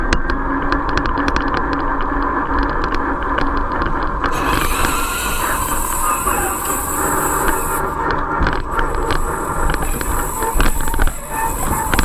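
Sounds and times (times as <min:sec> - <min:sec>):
electric motor and gears whirring: 0:02.8 - 0:12.0
high hiss: 0:02.8 - 0:12.0.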